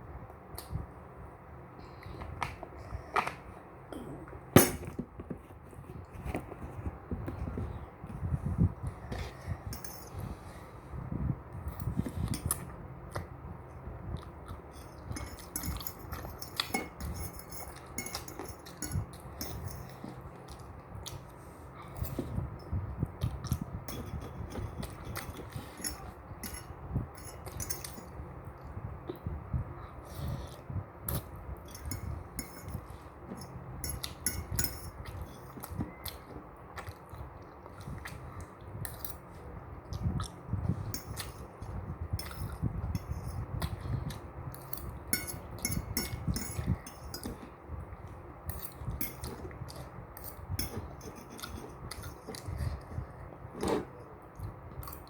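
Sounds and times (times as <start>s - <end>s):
utensils clinking against bowl: 9.3s - 10.2s, 14.7s - 20.5s, 23.9s - 28.2s, 31.6s - 36.4s, 42.2s - 43.4s, 44.5s - 47.5s, 48.5s - 52.8s.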